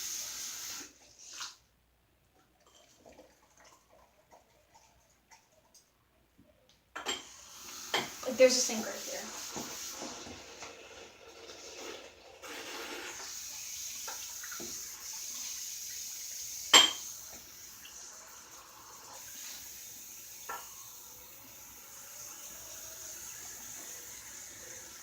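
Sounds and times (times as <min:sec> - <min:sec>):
tap water running into sink: 0:07.0 - 0:25.0.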